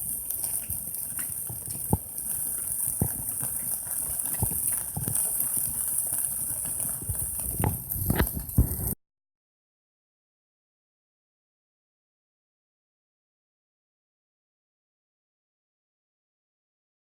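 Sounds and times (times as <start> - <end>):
campfire crackling and popping: 0.0 - 9.0
steady high hiss: 0.0 - 9.0.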